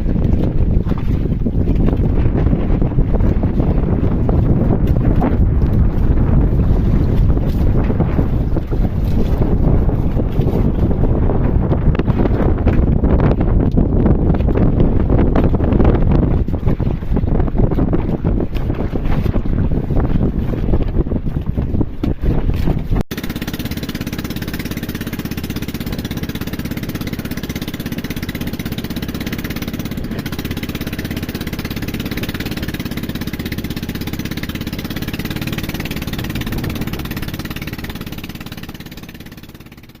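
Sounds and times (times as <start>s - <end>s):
wind buffeting microphone: 0.0s - 40.0s
small engine running: 23.1s - 40.0s.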